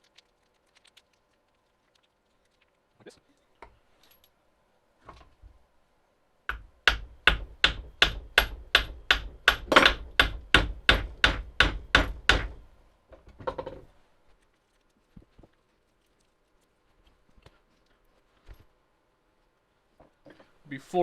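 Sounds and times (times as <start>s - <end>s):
hammer striking metal: 6.5s - 12.6s.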